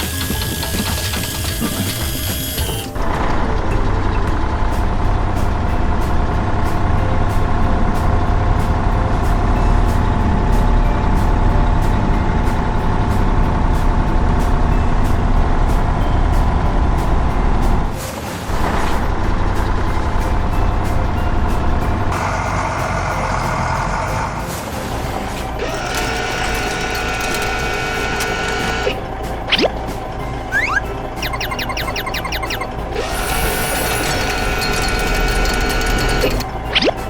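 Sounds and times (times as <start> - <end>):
truck engine rumbling: 18.6 - 37.0
regular ticking: 25.6 - 29.8, 30.4 - 37.0.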